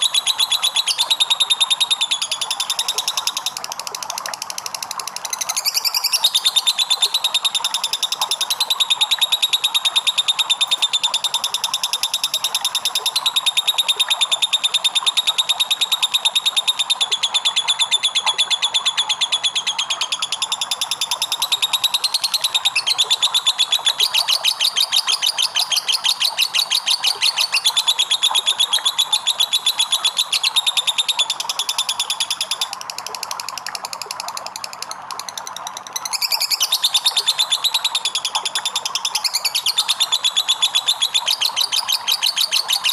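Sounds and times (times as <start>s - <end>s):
bird chattering trill: 0.0s - 3.6s, 4.5s - 32.7s, 36.0s - 42.9s.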